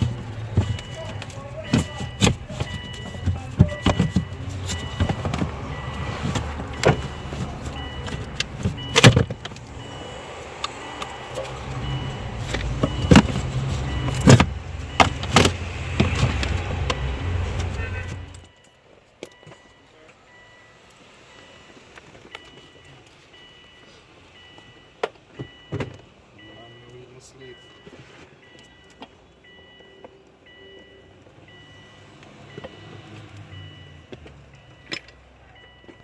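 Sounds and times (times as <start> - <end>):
parts knocking and clicking: 0.0 - 9.8, 10.6 - 19.6.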